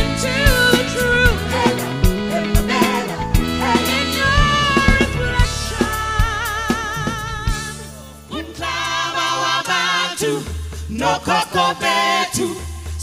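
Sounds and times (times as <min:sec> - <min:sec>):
band with bass and drums: 0:00.0 - 0:08.9
person singing: 0:00.0 - 0:08.9.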